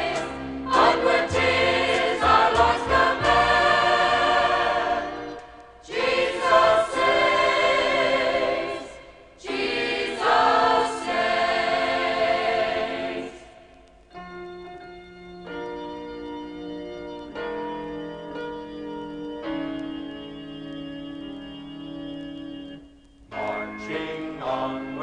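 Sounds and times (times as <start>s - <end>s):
choir singing a hymn: 0.0s - 13.7s, 23.3s - 25.0s.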